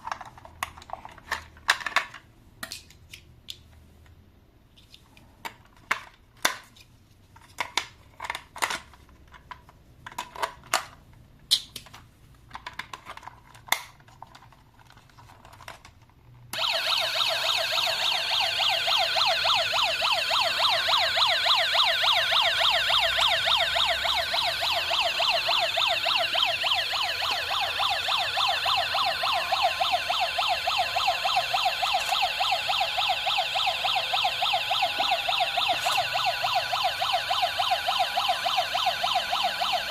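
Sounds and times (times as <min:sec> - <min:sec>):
toy siren warbling: 0:16.6 - 0:39.9.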